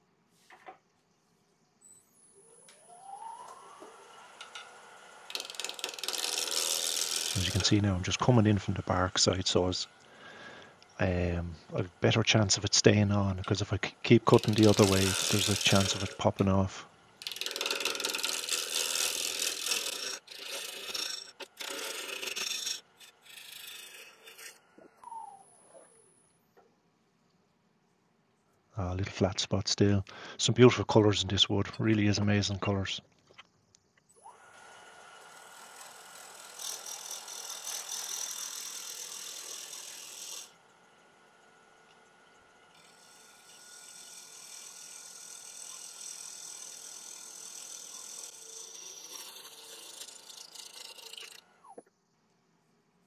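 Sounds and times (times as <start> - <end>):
lathe gouge scraping wood: 3.9 - 9.0, 12.2 - 24.6, 34.6 - 40.5, 42.8 - 51.5.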